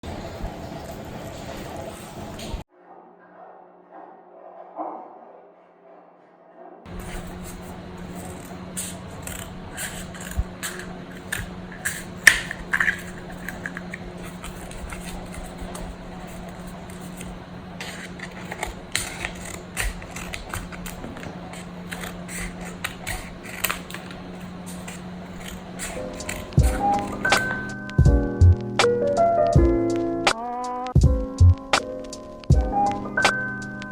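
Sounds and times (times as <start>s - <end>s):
objects scraping and clicking: 6.9s - 27.7s
steady low hum: 6.9s - 29.9s.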